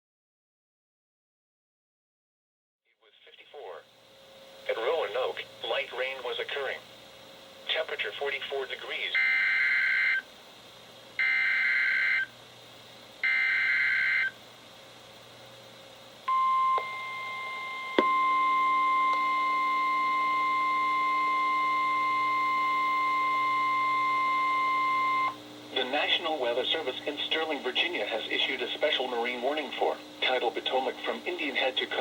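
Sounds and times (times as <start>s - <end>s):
low buzz: 16.2s - 25.8s.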